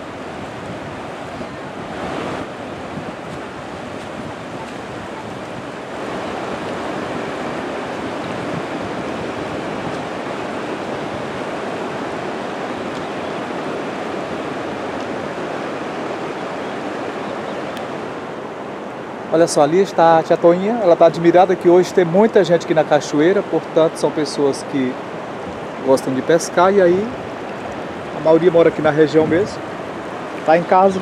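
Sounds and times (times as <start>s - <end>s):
water rushing in rapids: 0.0s - 31.0s.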